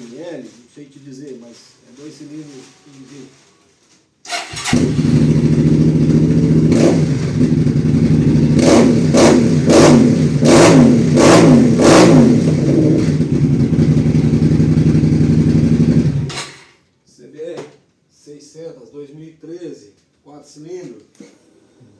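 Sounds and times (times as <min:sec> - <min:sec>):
motorcycle engine idling and revving: 0:04.4 - 0:16.4.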